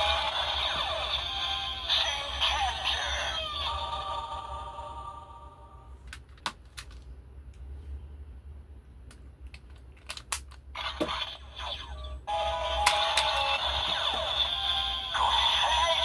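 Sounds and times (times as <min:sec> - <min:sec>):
toy electronic sound effect: 0:00.0 - 0:04.9, 0:10.8 - 0:16.0
plastic toy clicks: 0:09.5 - 0:10.7
noisy electronic sound: 0:10.8 - 0:16.0.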